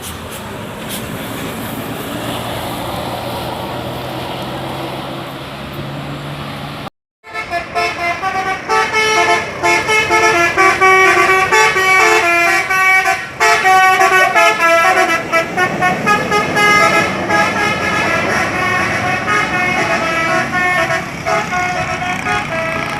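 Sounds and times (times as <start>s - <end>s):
road and engine noise: 0.0s - 22.9s
musical bus air horn: 7.2s - 22.9s.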